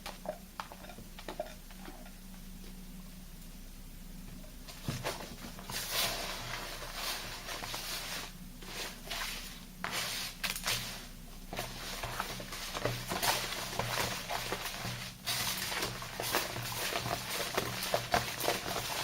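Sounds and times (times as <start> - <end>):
wet soap lather squishing: 5.0 - 19.0.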